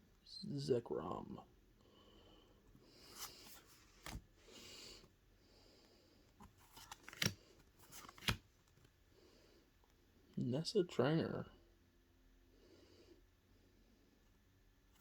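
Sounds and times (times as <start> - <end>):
cards sliding rustle: 2.7 - 5.1, 6.3 - 9.0
cards tapping: 6.7 - 8.9.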